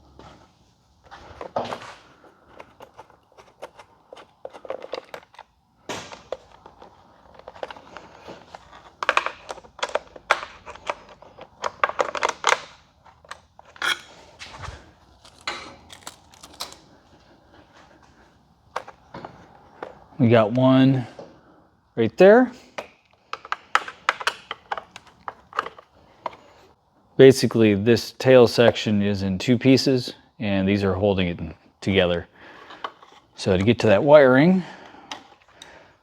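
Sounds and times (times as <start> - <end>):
clicks and knocks on plastic panels: 22.8 - 26.4.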